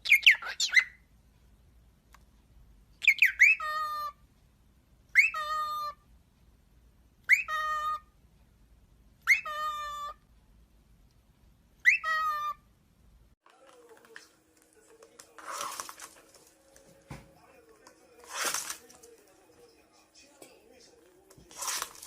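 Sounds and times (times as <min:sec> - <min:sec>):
pet bird whistling call: 0:07.3 - 0:08.0, 0:11.8 - 0:12.6.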